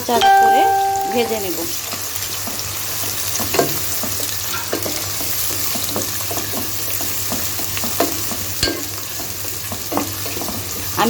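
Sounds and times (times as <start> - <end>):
onions sizzling in oil: 0.0 - 11.0.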